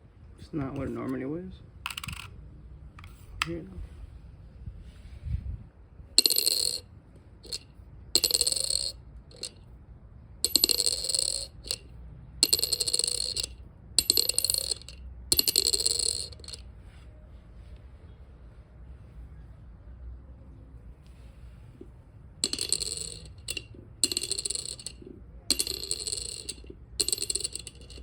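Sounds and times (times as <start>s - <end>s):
coin clinking on hard surface: 1.9s - 2.4s, 6.2s - 9.6s, 10.4s - 16.6s, 22.4s - 28.0s.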